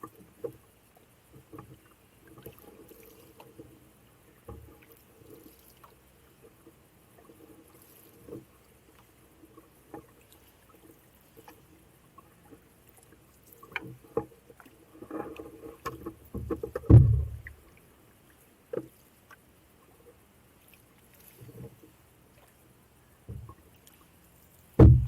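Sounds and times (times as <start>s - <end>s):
paddle strokes in water: 0.0s - 25.0s
canoe knocks: 15.1s - 17.6s, 23.3s - 23.6s, 24.8s - 25.0s.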